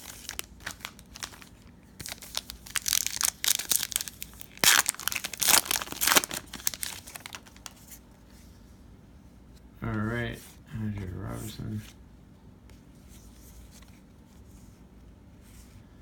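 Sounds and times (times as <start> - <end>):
plastic wrapper tearing and crinkling: 0.0 - 7.8.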